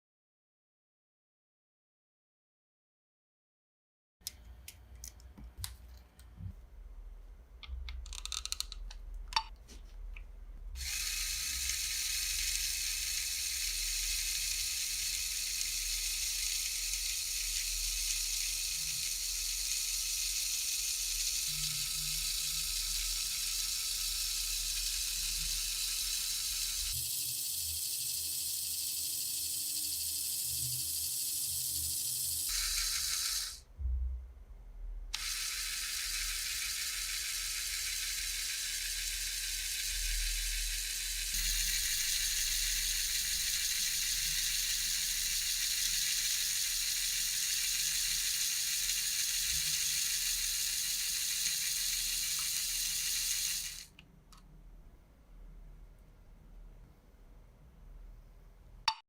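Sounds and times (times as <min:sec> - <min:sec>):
plastic parts clicking together: 0:07.6 - 0:09.5.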